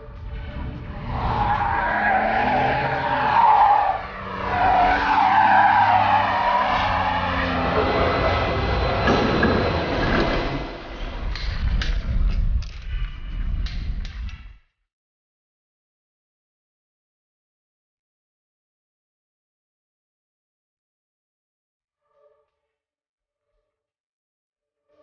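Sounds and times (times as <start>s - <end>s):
car engine revving: 0.0s - 11.0s
tyres squealing: 1.1s - 9.8s.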